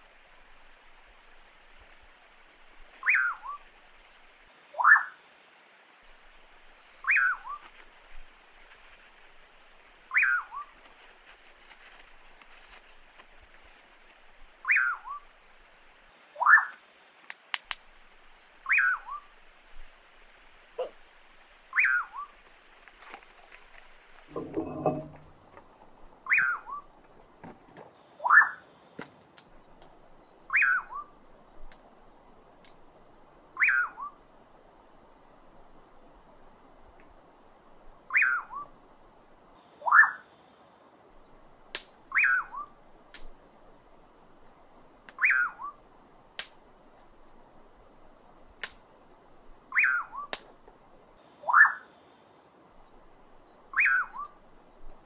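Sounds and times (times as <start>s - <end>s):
faint high insect-like buzz: 0.0s - 55.0s
sharp clicks: 17.2s - 17.8s.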